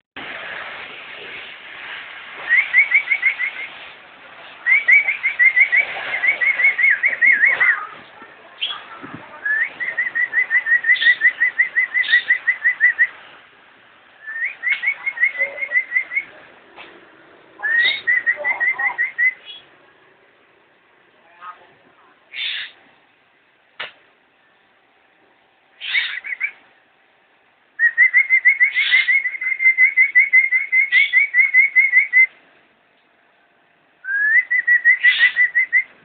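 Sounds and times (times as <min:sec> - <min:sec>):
lovebird chirping: 0:02.5 - 0:03.8, 0:04.6 - 0:07.9, 0:08.5 - 0:13.2, 0:14.2 - 0:16.4, 0:17.6 - 0:19.8, 0:25.8 - 0:26.6, 0:27.8 - 0:32.3, 0:34.0 - 0:35.9.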